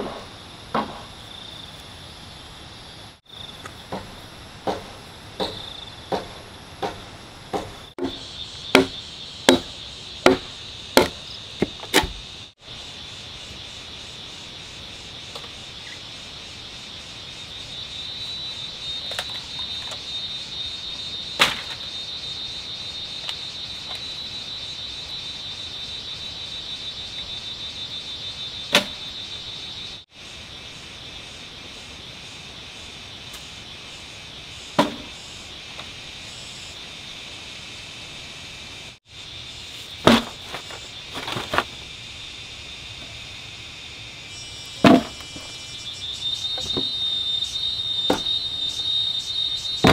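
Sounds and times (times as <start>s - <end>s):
insects chirring: 0.0s - 49.9s
sharp knocks: 3.9s - 12.2s, 34.8s - 35.1s, 48.1s - 48.3s.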